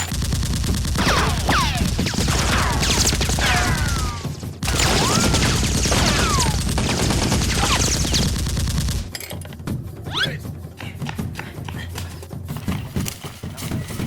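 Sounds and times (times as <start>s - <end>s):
rapid automatic gunfire: 0.0s - 9.1s
whistling ricochets: 3.6s - 6.6s.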